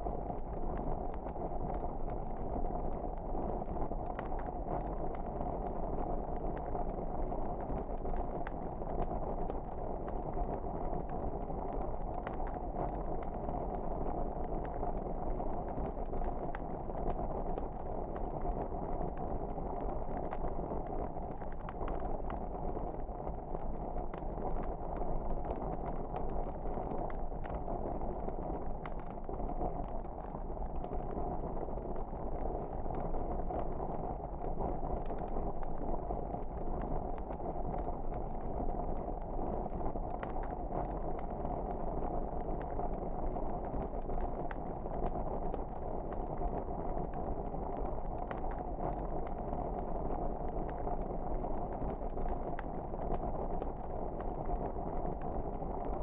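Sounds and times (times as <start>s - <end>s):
low rush of flames: 0.0s - 55.8s
wood fire pops and snaps: 6.5s - 22.5s, 23.4s - 31.3s, 40.1s - 55.8s.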